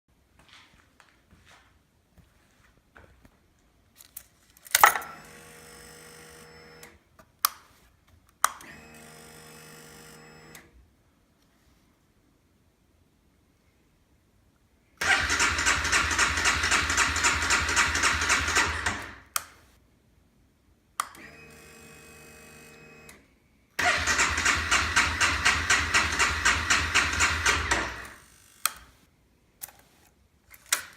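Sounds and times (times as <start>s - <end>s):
starter motor cranking engine: 15.0s - 19.3s, 23.8s - 28.9s
click: 19.3s - 19.6s, 21.0s - 21.3s, 23.0s - 23.2s, 28.6s - 28.9s.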